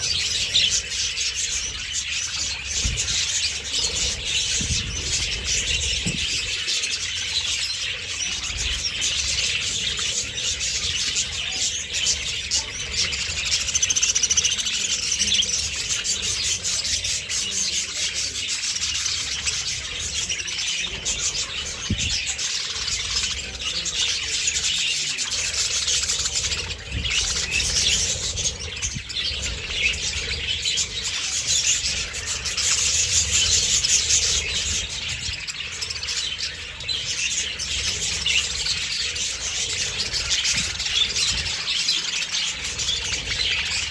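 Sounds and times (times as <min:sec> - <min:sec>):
flock of birds chattering: 0:00.0 - 0:43.9.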